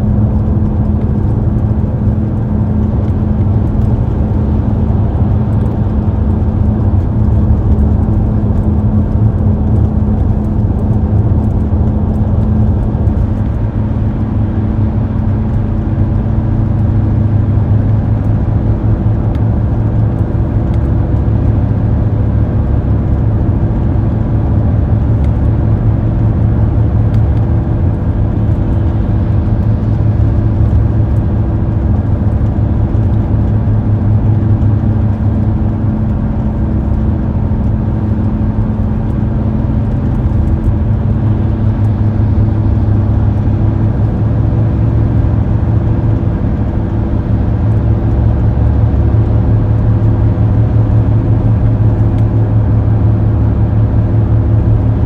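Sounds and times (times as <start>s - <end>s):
car road noise and engine hum: 0.0s - 55.0s.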